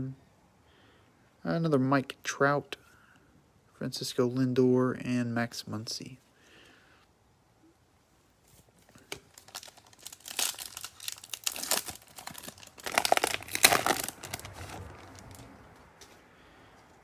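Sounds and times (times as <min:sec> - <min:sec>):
wrapper tearing and crinkling: 0:08.9 - 0:15.5.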